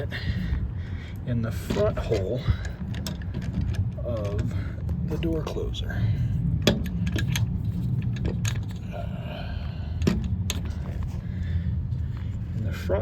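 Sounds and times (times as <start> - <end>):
steady low rumble: 0.0 - 13.0
small metal clicks: 6.6 - 8.9.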